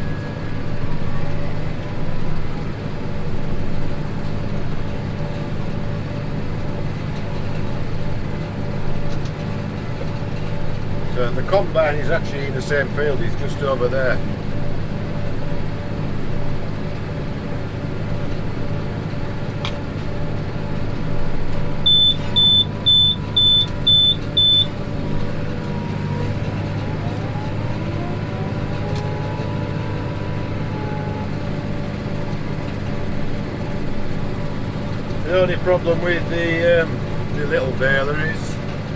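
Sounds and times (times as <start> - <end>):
tractor engine running: 0.0 - 38.9
short high electronic beeps: 21.9 - 24.7.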